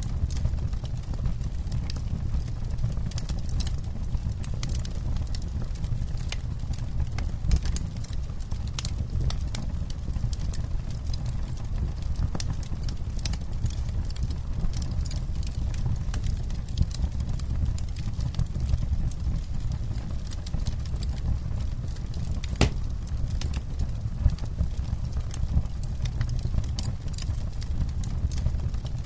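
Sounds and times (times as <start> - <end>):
low rumble of burning flames: 0.0 - 29.0
campfire pops and snaps: 11.8 - 29.0.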